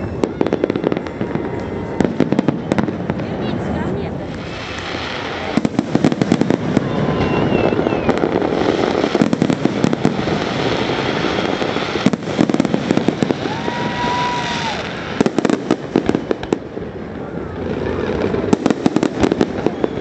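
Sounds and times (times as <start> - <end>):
fireworks crackling bangs: 0.0 - 20.0
whistle-like rising tone: 6.8 - 8.3.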